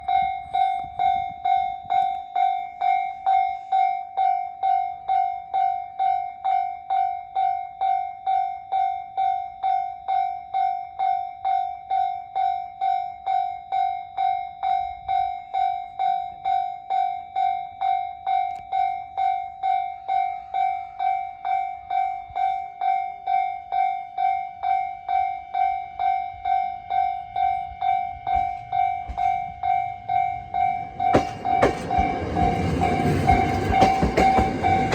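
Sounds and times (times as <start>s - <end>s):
level-crossing warning bell: 0.0s - 34.9s
train low rumble: 18.5s - 34.9s.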